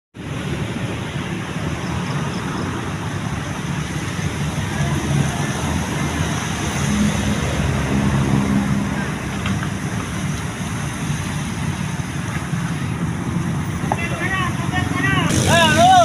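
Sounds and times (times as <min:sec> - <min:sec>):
vehicle engine hum: 0:00.2 - 0:16.0.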